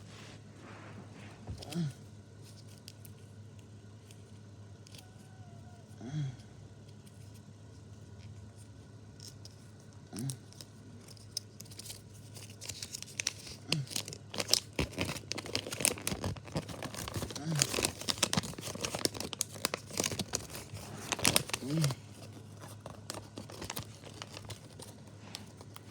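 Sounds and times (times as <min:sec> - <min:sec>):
plastic bag rustling: 0:00.0 - 0:01.8, 0:12.2 - 0:25.9
bag tearing and crackling: 0:12.7 - 0:25.9.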